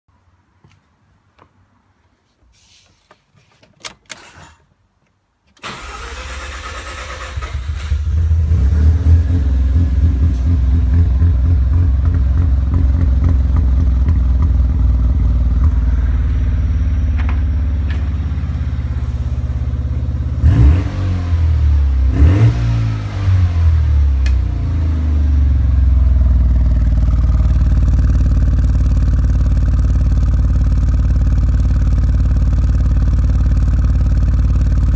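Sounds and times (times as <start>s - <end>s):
rotary engine cranking and starting: 5.6s - 8.7s
engine idling: 5.7s - 22.3s, 23.7s - 34.9s
engine revving: 5.7s - 29.7s.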